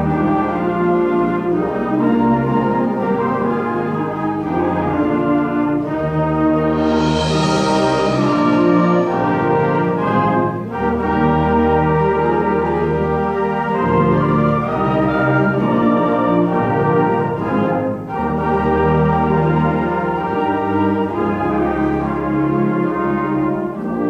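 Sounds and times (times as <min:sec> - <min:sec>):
concert band playing chords: 0:06.4 - 0:10.9.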